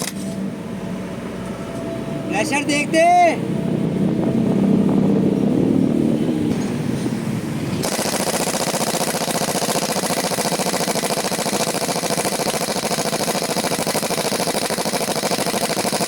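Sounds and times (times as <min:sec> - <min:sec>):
power screwdriver rattling: 0:00.0 - 0:00.2, 0:07.8 - 0:16.0.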